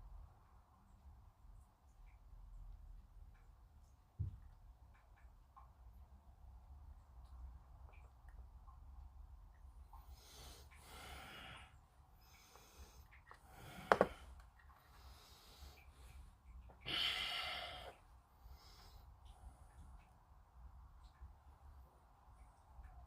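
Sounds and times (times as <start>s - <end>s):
person breathing out: 16.8s - 18.0s.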